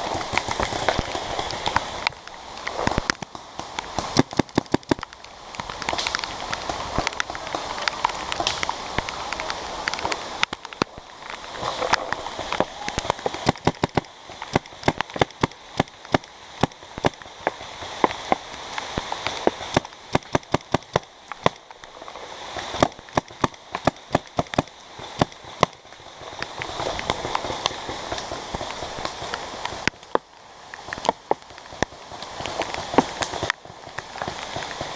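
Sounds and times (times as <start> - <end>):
rain pattering: 0.0 - 34.9
paintball markers firing: 4.2 - 5.0, 13.0 - 17.2, 19.7 - 21.6, 22.8 - 25.8.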